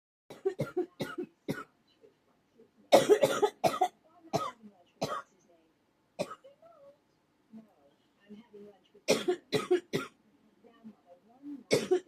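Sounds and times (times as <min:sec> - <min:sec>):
person coughing: 0:03.0 - 0:05.2, 0:09.1 - 0:10.2, 0:11.7 - 0:12.0.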